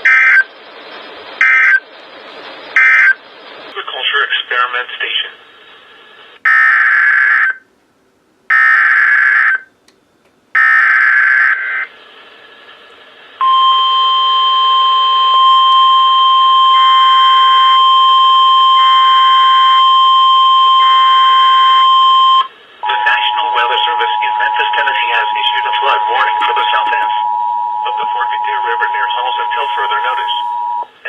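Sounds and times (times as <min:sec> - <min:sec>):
digital data bursts: 0:00.0 - 0:05.3, 0:15.9 - 0:27.2, 0:27.8 - 0:30.6
steady warning alarm tone: 0:00.0 - 0:05.3, 0:10.6 - 0:12.0, 0:13.4 - 0:31.0.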